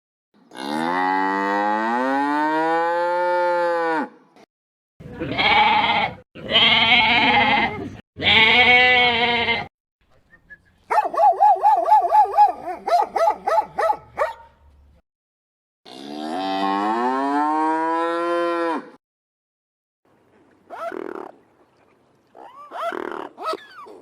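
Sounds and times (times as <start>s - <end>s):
dog yapping: 10.9s - 14.5s, 22.7s - 24.0s
cow mooing: 15.9s - 19.0s.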